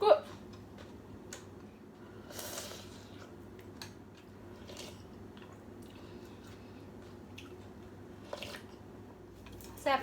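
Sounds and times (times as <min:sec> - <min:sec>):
low steady hum: 0:00.0 - 0:10.0
person chewing and slurping: 0:02.0 - 0:08.8.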